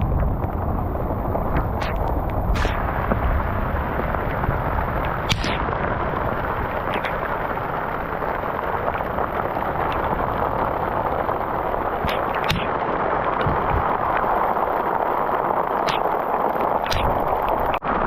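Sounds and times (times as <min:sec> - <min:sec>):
floodwater rushing: 0:00.0 - 0:18.0
sharp clicks or crackles: 0:01.4 - 0:03.3, 0:03.9 - 0:05.7, 0:06.4 - 0:17.8.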